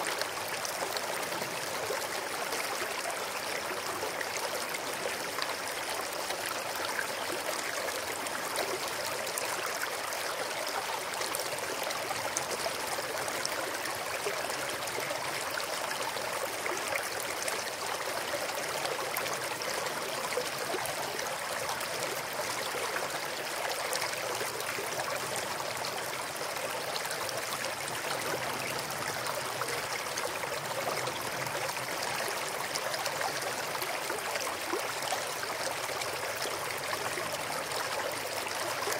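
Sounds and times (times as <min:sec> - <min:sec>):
stream flowing over stones: 0:00.0 - 0:38.9.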